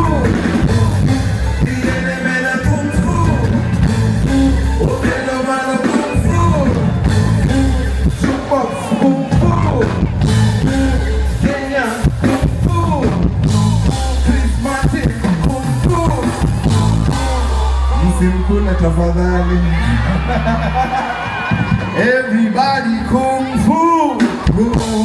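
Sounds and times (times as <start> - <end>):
heavy bass notes: 0.0 - 22.3
live band music: 0.0 - 25.0
person singing: 0.0 - 25.0.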